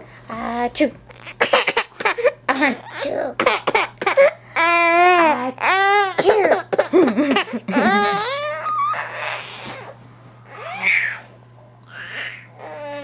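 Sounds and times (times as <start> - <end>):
baby laughing: 6.9 - 9.8.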